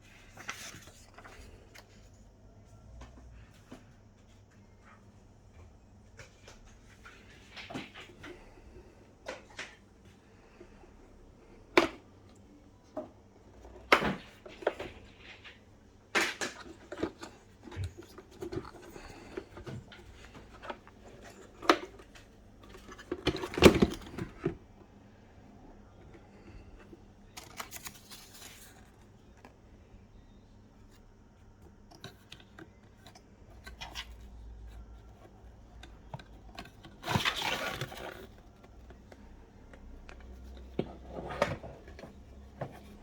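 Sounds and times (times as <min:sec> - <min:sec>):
packaging rustling: 0:27.3 - 0:29.4, 0:32.0 - 0:43.0.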